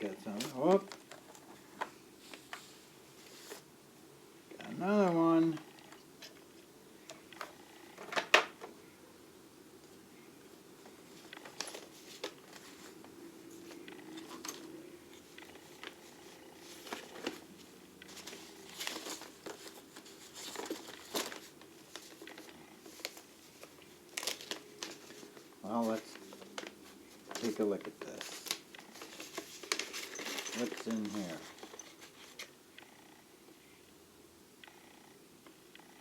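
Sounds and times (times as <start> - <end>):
tools handled in a toolbox drawer: 29.0 - 32.4.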